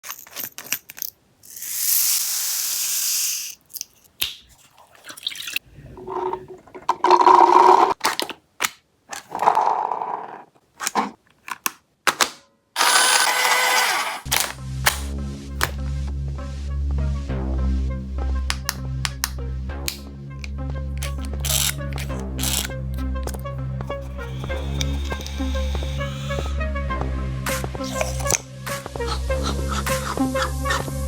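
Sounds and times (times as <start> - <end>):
hissing spraying bursts: 1.9 - 3.6, 24.2 - 26.6
toy blaster clicks: 12.8 - 15.1, 21.0 - 22.7
electronic music: 14.2 - 31.0.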